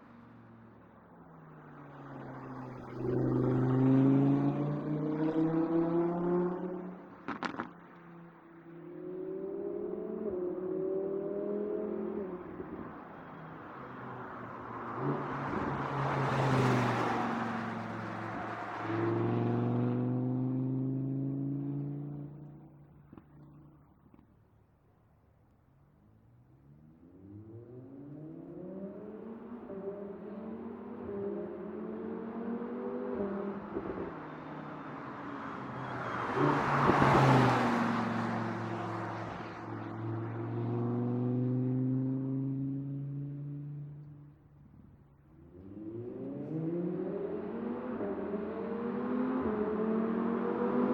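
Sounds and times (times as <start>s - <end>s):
road noise: 0.0s - 50.9s
car engine driving past: 14.8s - 21.8s.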